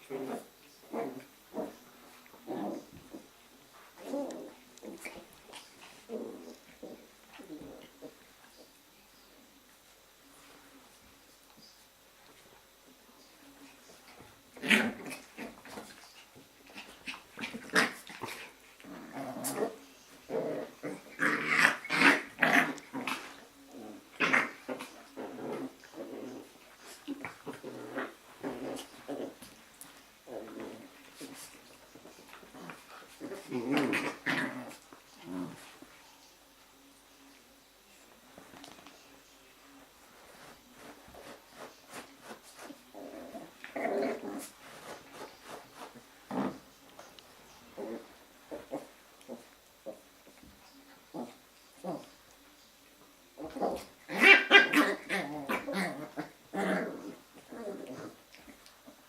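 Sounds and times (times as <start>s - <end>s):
puppies play-growling: 0.0s - 8.8s, 12.2s - 36.3s, 40.0s - 59.0s
puppies growling and yipping: 16.6s - 29.5s, 53.4s - 58.6s.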